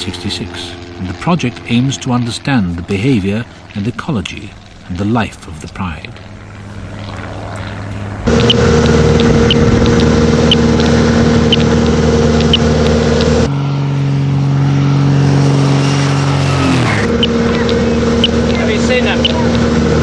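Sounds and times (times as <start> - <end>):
engine droning: 0.0 - 20.0
short high beeps: 8.3 - 11.7.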